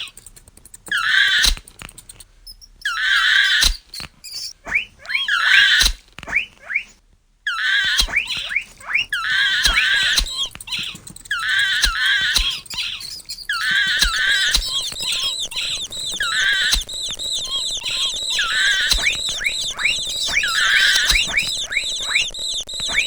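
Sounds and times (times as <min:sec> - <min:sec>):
sharp clicks: 0:00.0 - 0:02.8, 0:09.6 - 0:23.0
mouse squeaking: 0:00.0 - 0:06.9, 0:07.5 - 0:23.0.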